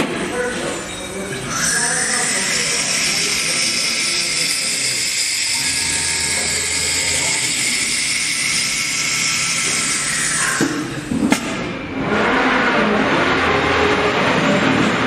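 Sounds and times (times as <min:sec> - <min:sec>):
router spindle cutting wood: 0:01.6 - 0:10.6.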